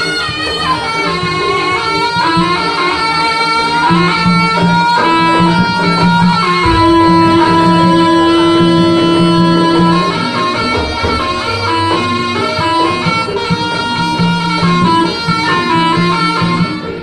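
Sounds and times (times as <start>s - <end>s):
loud instrumental dance music: 6.6s - 8.3s.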